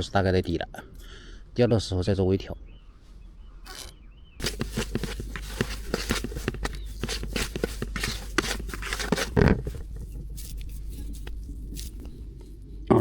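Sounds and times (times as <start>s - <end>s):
handling clicks and rustles: 3.7s - 13.0s.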